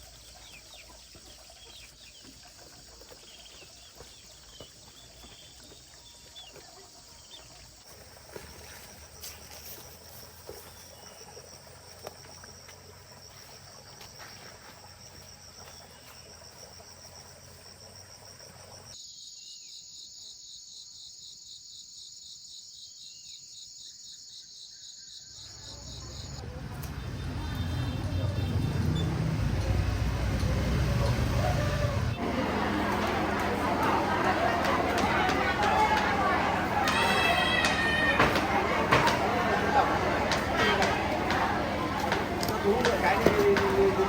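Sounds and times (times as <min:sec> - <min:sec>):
insects trilling: 0:00.0 - 0:30.9, 0:32.1 - 0:44.0
pulsing insect chorus: 0:00.0 - 0:44.0.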